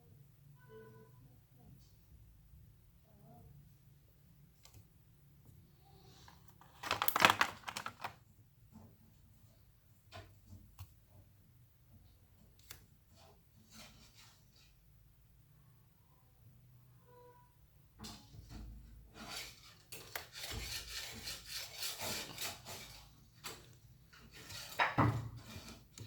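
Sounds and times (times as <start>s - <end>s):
small hard objects clattering: 6.5s - 8.2s.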